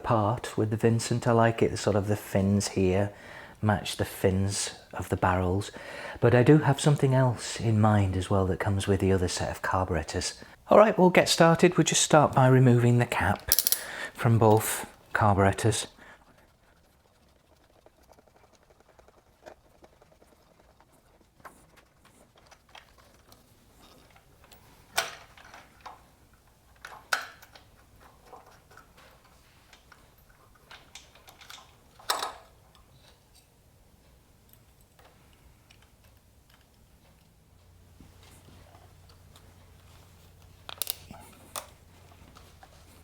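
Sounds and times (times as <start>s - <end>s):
small metallic clicks and clinks: 13.4s - 13.9s, 40.7s - 41.8s.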